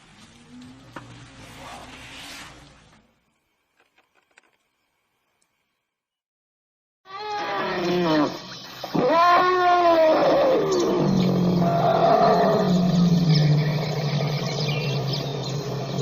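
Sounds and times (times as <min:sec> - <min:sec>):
elephant calling: 0:07.1 - 0:15.5.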